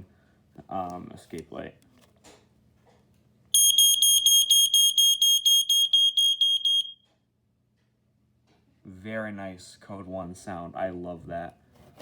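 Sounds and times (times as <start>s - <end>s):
smoke alarm pulsing tone: 3.6s - 7.0s.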